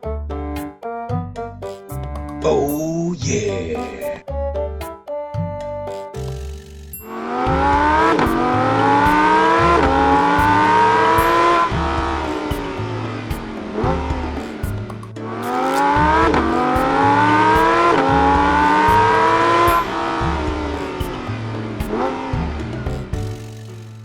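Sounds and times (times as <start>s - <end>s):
music with low beat: 0.4s - 24.0s
engine accelerating through gears: 7.2s - 23.6s.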